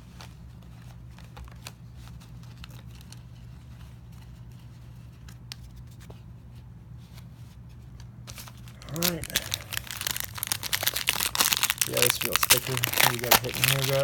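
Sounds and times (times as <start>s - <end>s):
cards clicking and sliding: 11.9s - 14.0s.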